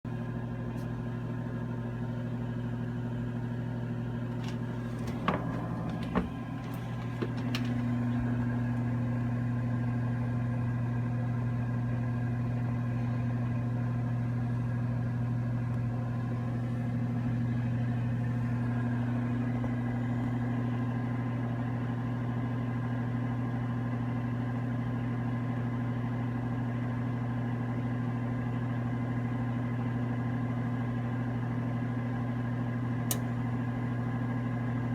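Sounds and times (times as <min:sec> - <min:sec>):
furnace motor hum: 0:00.1 - 0:23.8, 0:30.8 - 0:34.9
furnace ignition clicks: 0:04.3 - 0:09.0, 0:33.1 - 0:34.9.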